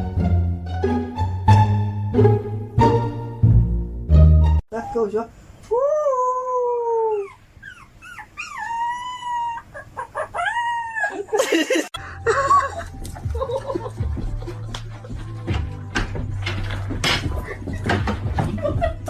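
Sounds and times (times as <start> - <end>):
dog howling: 8.2 - 11.3.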